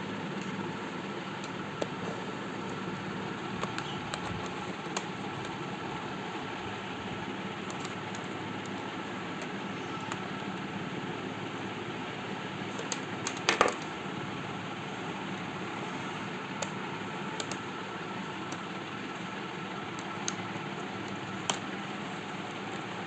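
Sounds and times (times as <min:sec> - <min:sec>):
steady hum and hiss: 0:00.0 - 0:23.0
clicks and taps of handling parts: 0:12.8 - 0:13.9.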